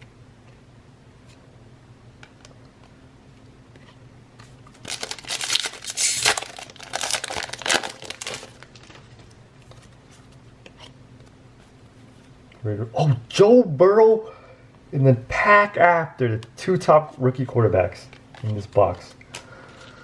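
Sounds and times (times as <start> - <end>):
foil wrapper crinkling and tearing: 4.7 - 9.1.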